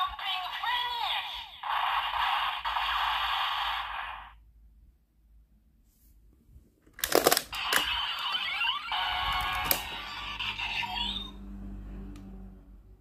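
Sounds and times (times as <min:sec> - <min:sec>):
plastic clicks: 0:06.8 - 0:08.0
toy belt electronic sound effects: 0:07.1 - 0:11.4.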